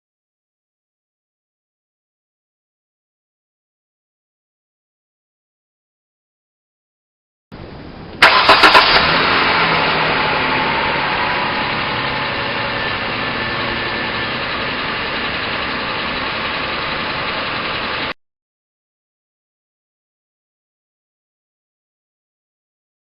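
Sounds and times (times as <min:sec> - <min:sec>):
car engine starting and idling: 0:07.6 - 0:18.2.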